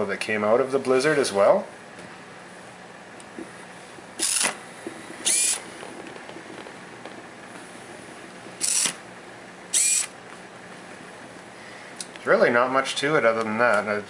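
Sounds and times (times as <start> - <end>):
small servo motor whirring: 4.2 - 4.6, 5.2 - 5.6, 8.6 - 9.0, 9.7 - 10.2.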